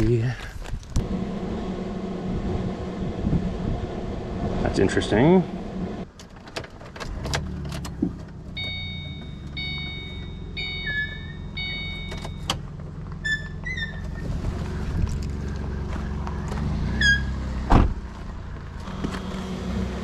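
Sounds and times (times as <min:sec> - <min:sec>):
vehicle engine running: 0:01.0 - 0:06.0, 0:08.2 - 0:20.0
warning chime: 0:08.6 - 0:12.5.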